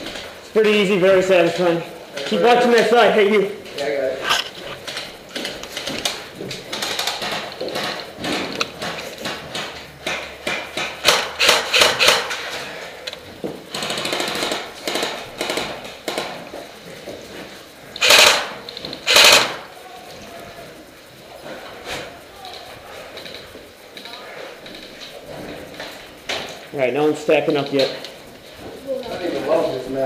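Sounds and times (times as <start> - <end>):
knocking and clattering: 4.5 - 12.5, 13.3 - 17.5.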